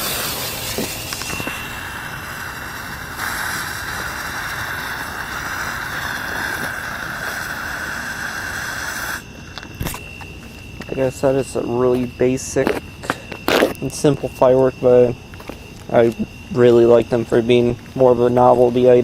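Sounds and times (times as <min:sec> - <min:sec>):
spinning firework hissing: 0:00.0 - 0:14.5.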